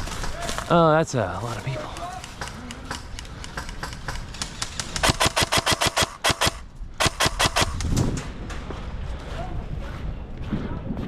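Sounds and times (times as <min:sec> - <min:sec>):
airsoft gun firing rapid shots: 0:02.2 - 0:08.0.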